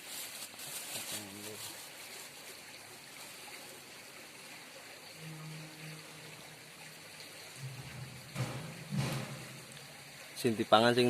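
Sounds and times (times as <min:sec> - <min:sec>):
river water flowing: 0:00.2 - 0:11.0
faint low hum: 0:05.0 - 0:10.6.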